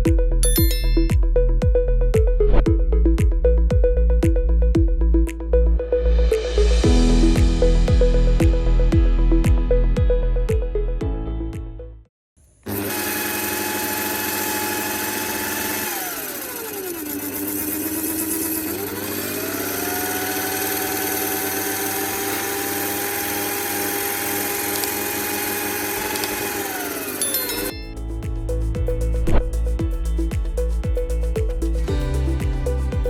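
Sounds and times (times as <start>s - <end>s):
small electric motor whining: 12.7s - 27.8s.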